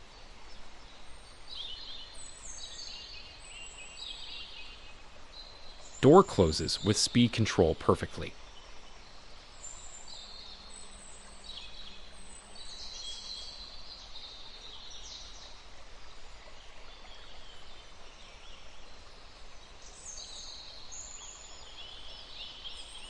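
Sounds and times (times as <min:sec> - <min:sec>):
steady background hiss: 0:00.0 - 0:23.0
birds chirping: 0:05.4 - 0:08.3.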